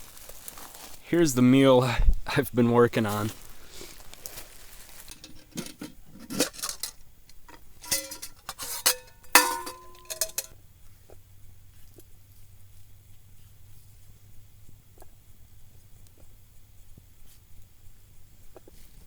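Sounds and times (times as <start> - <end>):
metal cookware clinking: 5.1 - 10.5.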